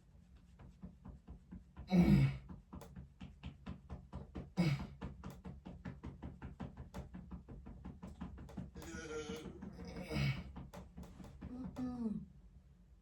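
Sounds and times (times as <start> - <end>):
hand slapping rhythmically: 2.2 - 12.0.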